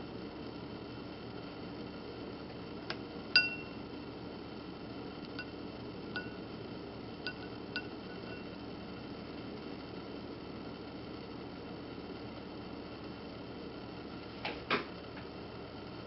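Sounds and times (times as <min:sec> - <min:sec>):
steady low hum: 0:00.0 - 0:14.4
water drops clinking on glass: 0:03.4 - 0:03.8, 0:06.2 - 0:06.4, 0:07.3 - 0:08.4.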